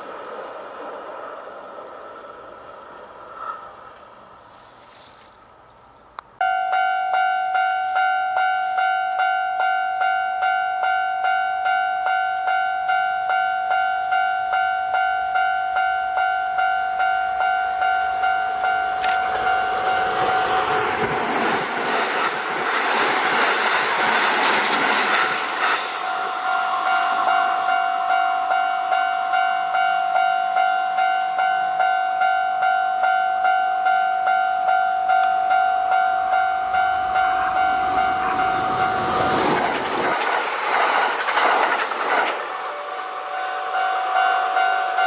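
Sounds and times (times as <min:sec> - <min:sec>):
train rumble: 0:00.0 - 0:11.8, 0:12.9 - 0:45.0
level crossing bell ringing: 0:06.4 - 0:20.6, 0:26.0 - 0:39.1, 0:43.2 - 0:45.0.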